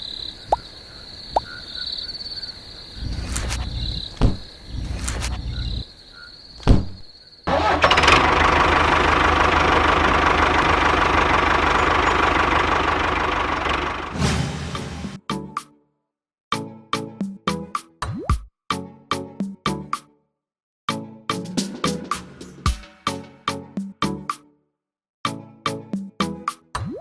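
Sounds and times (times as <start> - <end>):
insects trilling: 0.0 - 7.7
short low rumbles: 3.0 - 5.8
sharp knocks: 4.2 - 4.6, 6.6 - 7.1
small motor running: 7.6 - 13.6.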